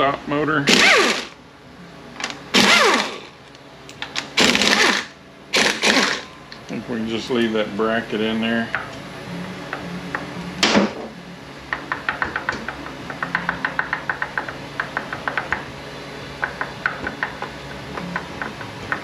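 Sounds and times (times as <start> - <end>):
hand ratchet clicking: 4.4 - 6.2.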